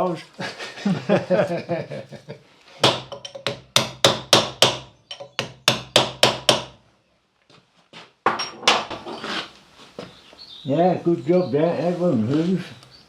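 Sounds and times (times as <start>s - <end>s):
hammer striking steel: 2.8s - 6.8s.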